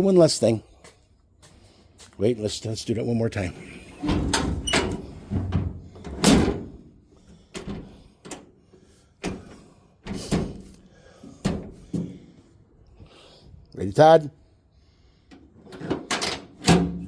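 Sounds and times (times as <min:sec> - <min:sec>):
metal tailgate clunks and slams: 0:03.9 - 0:06.9, 0:15.8 - 0:17.0.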